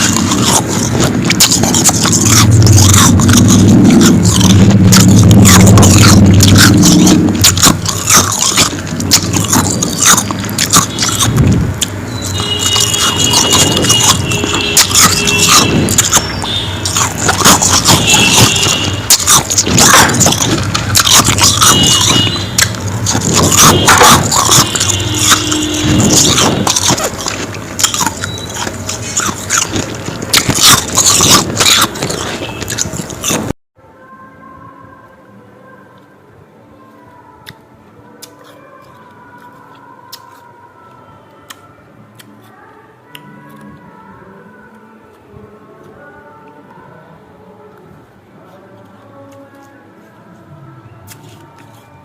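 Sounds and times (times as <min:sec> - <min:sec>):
chewing crunchy ice: 0:00.0 - 0:33.6.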